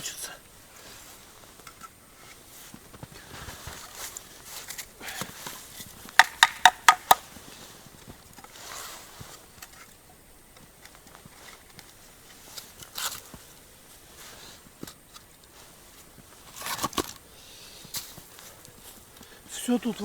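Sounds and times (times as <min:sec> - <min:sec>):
firewood shuffling and rustling: 0:00.7 - 0:10.0
sharp wood knocks: 0:06.2 - 0:07.2.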